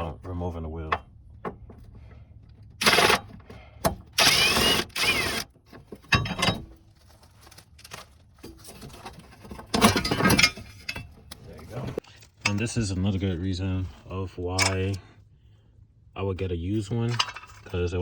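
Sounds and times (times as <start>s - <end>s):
impact wrench whirring: 2.8s - 3.4s, 4.1s - 5.5s.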